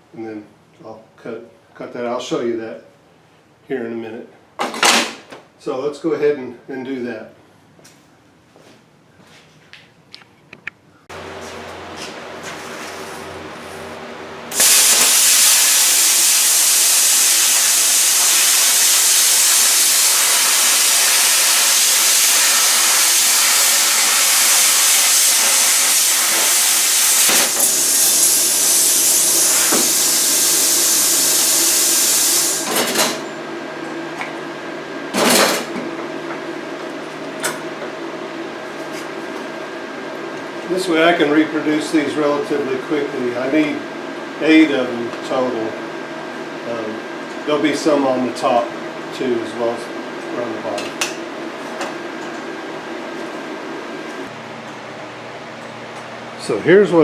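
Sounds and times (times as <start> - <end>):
machine hum: 10.9 - 57.0
plasma cutter hissing: 14.5 - 33.2
air blasts: 14.5 - 33.3.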